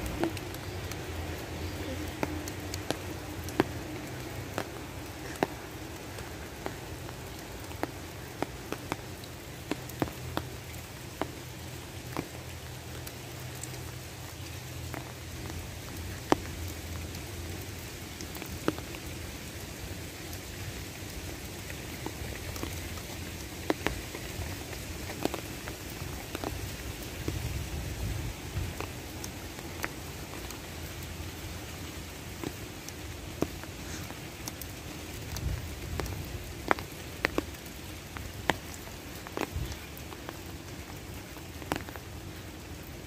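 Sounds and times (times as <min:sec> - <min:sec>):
large raindrops ticking: 0:00.0 - 0:43.0
steady rain falling: 0:00.0 - 0:43.0.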